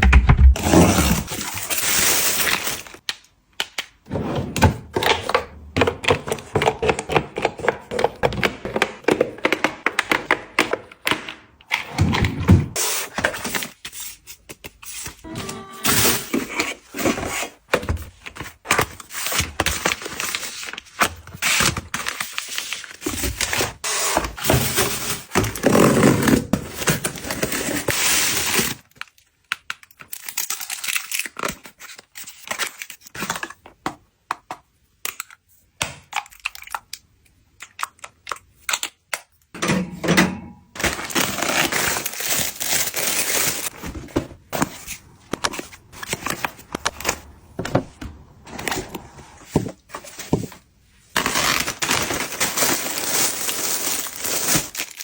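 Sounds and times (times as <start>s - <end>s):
packaging crinkling and tearing: 1.0s - 3.3s, 18.2s - 24.1s, 26.5s - 33.6s, 40.8s - 43.8s, 51.1s - 55.0s.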